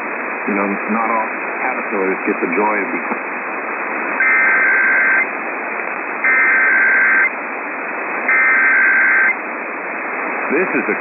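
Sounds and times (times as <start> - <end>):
radio hiss: 0.0 - 11.0
shrill buzzy digital data tones: 4.2 - 5.3, 6.2 - 7.3, 8.3 - 9.4.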